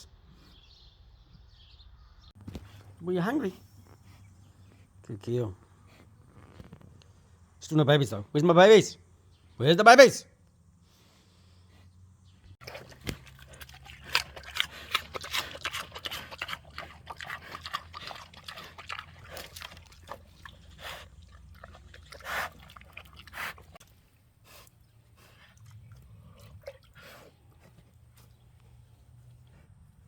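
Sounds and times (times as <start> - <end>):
pig chewing and crunching: 12.5 - 30.0.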